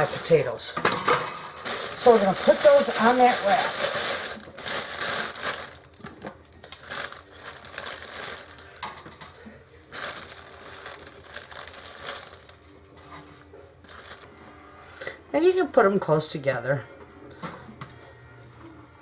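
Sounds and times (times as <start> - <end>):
plastic bag crinkling: 0.0 - 14.3.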